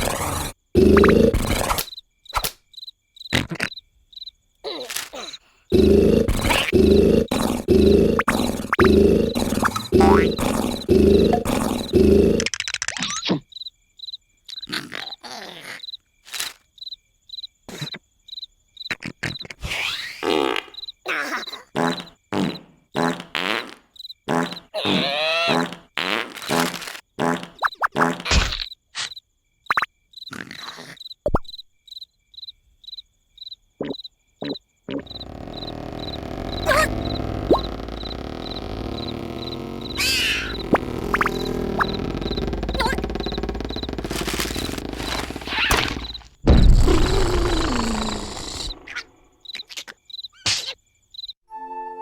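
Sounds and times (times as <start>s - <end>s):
cartoon snoring: 0.0s - 1.8s, 5.2s - 12.6s, 24.3s - 25.9s, 33.8s - 49.0s
scattered short noises: 0.0s - 2.5s, 4.8s - 12.8s, 33.8s - 48.9s
cricket chirps: 0.0s - 51.4s
comic sound effects: 6.4s - 12.5s, 33.8s - 48.7s.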